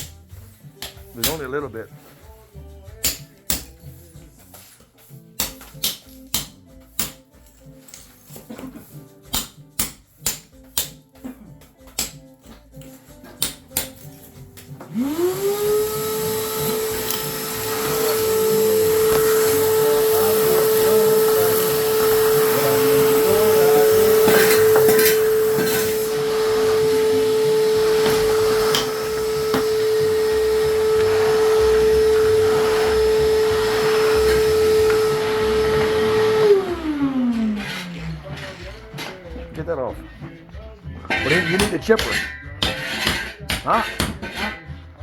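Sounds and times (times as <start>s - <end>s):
shop vacuum motor whine: 14.9s - 38.7s.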